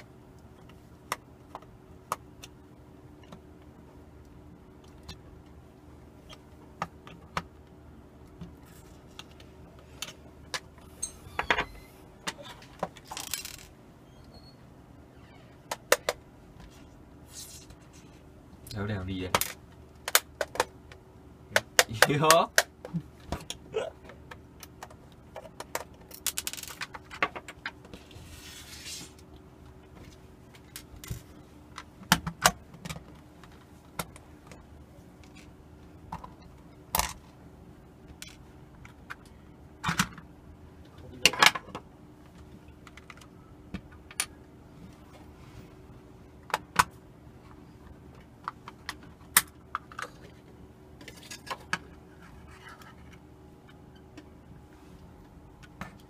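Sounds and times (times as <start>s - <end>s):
clicks and clatter of small parts: 12.8s - 13.8s, 24.3s - 27.8s.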